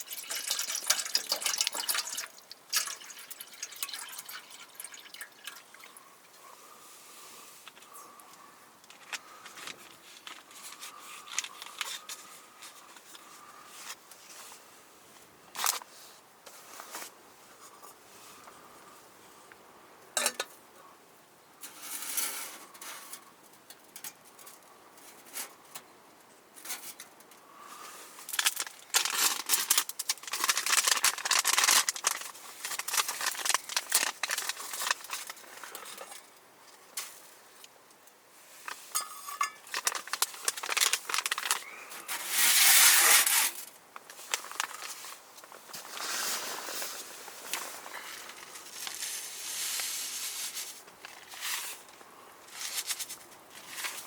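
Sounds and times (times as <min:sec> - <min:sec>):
rustling and crinkling material: 0:06.6 - 0:18.8, 0:27.6 - 0:37.6, 0:38.3 - 0:54.0.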